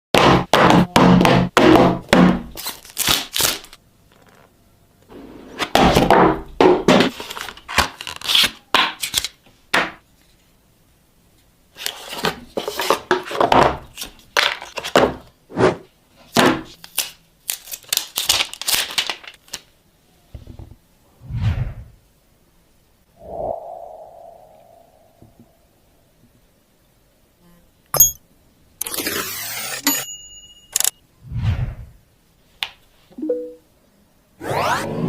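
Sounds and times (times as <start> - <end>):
packaging tearing and crinkling: 2.6 - 3.8, 7.2 - 9.4, 16.8 - 19.7.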